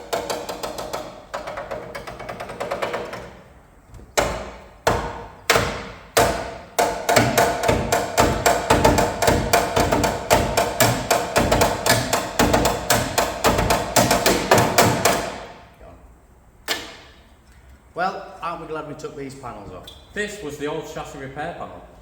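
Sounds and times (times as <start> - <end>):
music with percussive beat: 6.8 - 15.4.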